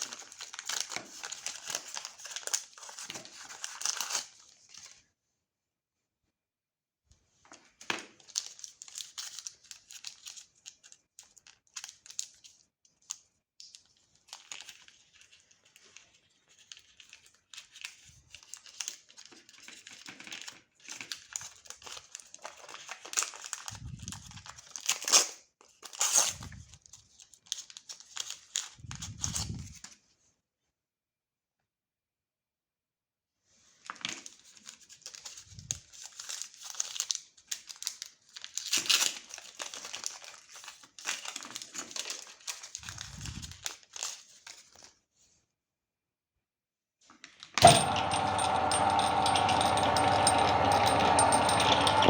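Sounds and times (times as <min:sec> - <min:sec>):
candy packaging crinkling: 0:00.0 - 0:05.0, 0:07.5 - 0:30.0, 0:33.8 - 0:45.0.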